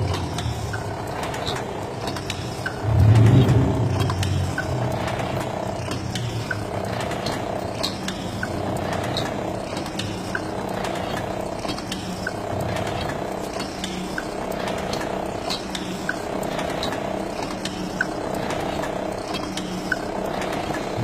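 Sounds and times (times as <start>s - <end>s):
machine clicking and ratcheting: 0.0s - 21.0s
loud low hum: 2.7s - 6.2s.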